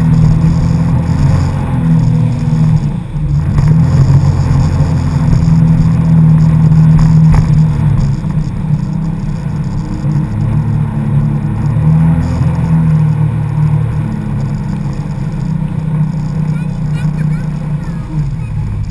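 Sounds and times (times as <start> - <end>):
jet ski engine running: 0.0 - 18.9.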